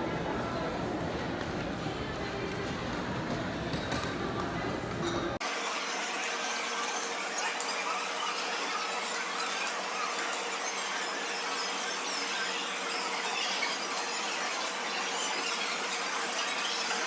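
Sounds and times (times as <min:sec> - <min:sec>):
steam wand frothing milk: 0:05.4 - 0:17.0.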